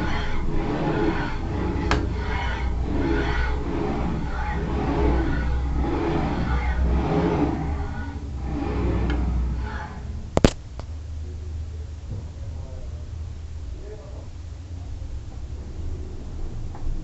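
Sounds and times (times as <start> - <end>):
cnc router motor humming: 0.0 - 10.6.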